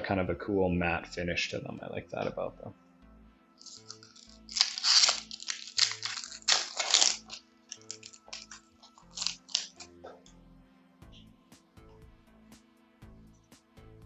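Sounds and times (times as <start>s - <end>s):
quiet background music: 0.0s - 14.0s
cards rustling and clicking: 3.6s - 9.9s
foil wrapper crinkling and tearing: 3.6s - 9.9s.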